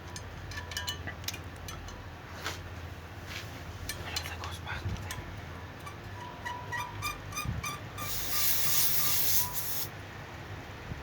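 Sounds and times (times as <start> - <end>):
short high squeaks: 5.9 - 9.9
refrigerant gas hissing: 8.0 - 10.0.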